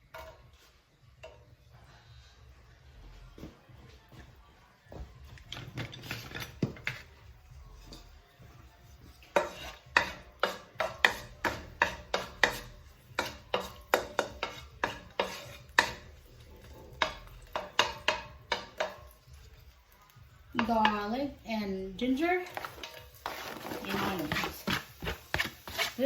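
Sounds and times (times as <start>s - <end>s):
kitchen utensils knocking and clinking: 5.5s - 7.2s, 9.2s - 19.3s, 22.1s - 26.0s.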